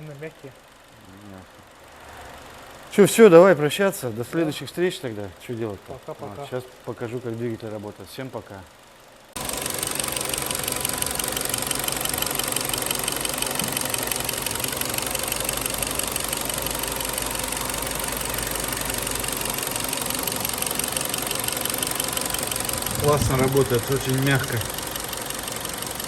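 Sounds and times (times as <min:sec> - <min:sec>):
car engine idling: 0:00.0 - 0:02.9, 0:09.0 - 0:26.0.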